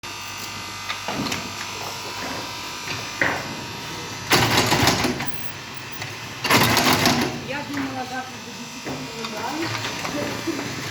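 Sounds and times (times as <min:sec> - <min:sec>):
machine humming: 0:00.1 - 0:10.9
machine clattering: 0:04.3 - 0:05.4, 0:06.4 - 0:08.0.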